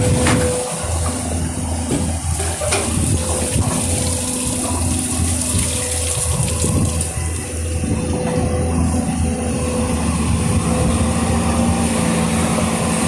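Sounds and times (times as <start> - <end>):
excavator engine running: 0.0 - 13.0.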